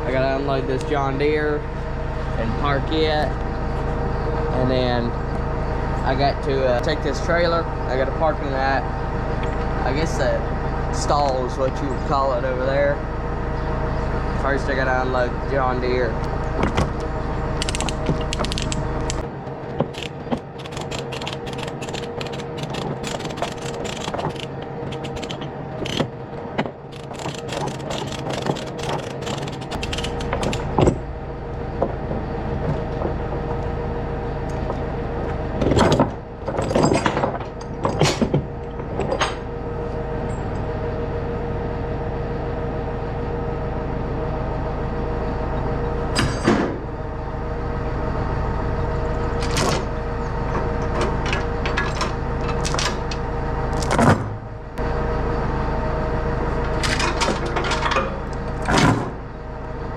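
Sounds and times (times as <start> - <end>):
tractor engine running: 0.0 - 59.9
metal clanks and knocks: 17.6 - 31.0, 35.6 - 39.5, 49.4 - 53.2, 56.7 - 59.2.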